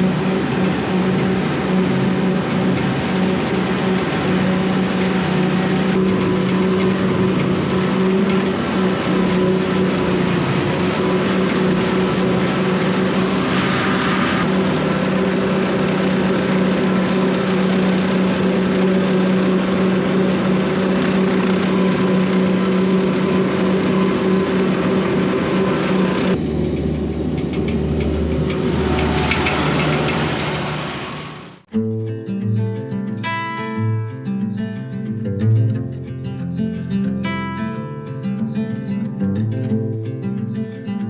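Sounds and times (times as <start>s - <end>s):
high rattle: 0.0s - 31.6s
tractor engine droning: 0.0s - 31.7s.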